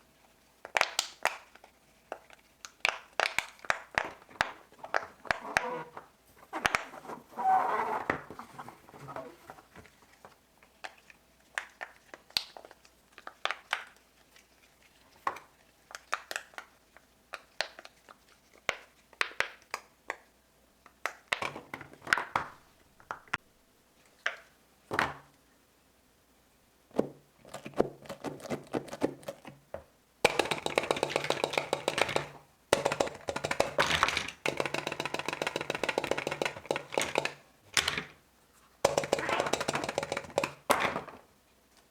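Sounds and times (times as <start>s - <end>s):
fidget toys popping and clicking: 30.2s - 38.0s, 38.8s - 41.1s.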